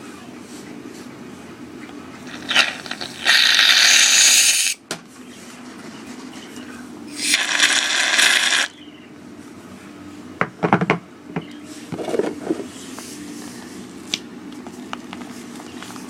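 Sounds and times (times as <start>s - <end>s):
loud hiss: 2.5s - 4.8s, 7.1s - 8.7s.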